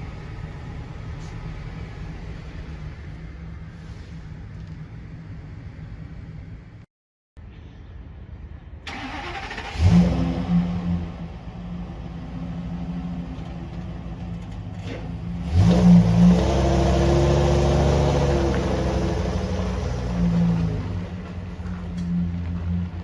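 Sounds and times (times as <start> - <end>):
engine revving: 8.9 - 11.3, 14.8 - 23.0.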